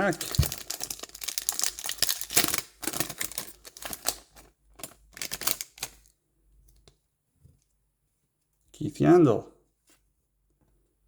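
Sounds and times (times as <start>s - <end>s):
wrapper crinkling and crackling: 0.0s - 6.1s.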